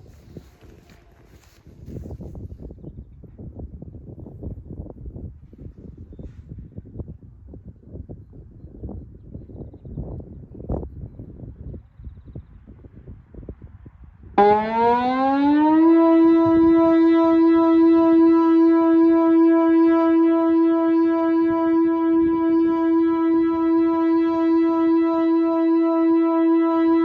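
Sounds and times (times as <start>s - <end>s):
electronic siren tone: 14.4s - 27.0s.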